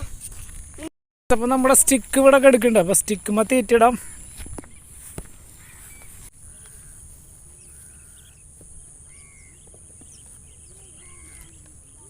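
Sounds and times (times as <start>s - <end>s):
faint bird calls: 4.1s - 12.0s.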